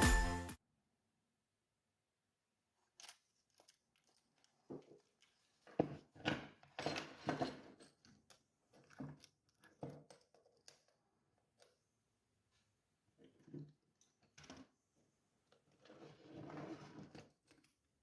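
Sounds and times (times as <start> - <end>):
small parts clicking and knocking: 2.9 - 11.9, 15.5 - 18.0.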